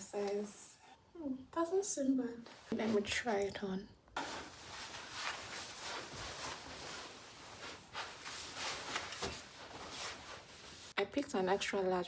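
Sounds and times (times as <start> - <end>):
clothing rustling: 4.2 - 11.0.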